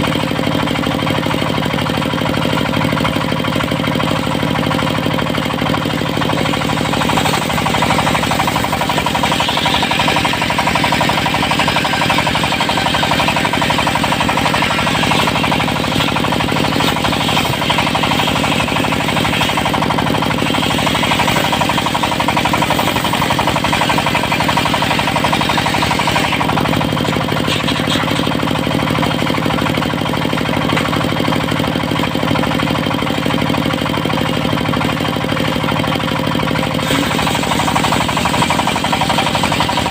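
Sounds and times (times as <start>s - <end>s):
diesel engine knocking: 0.0s - 39.9s
saw blade cutting wood: 0.3s - 33.7s, 36.5s - 39.9s.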